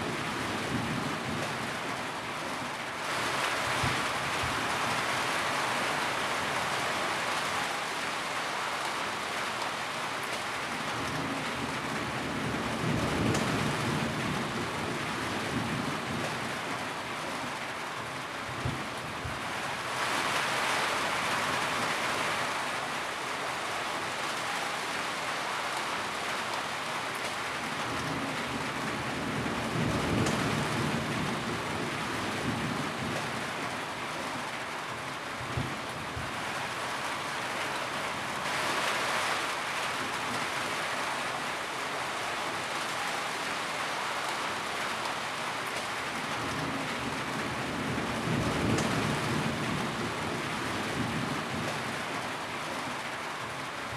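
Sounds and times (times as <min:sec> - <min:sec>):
steady rain falling: 0:00.0 - 0:53.9.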